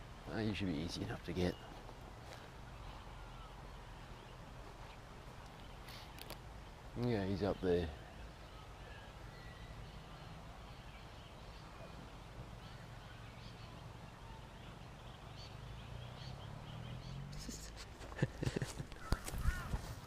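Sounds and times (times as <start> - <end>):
faint bird calls: 1.0 - 20.0
rustling: 17.3 - 20.0.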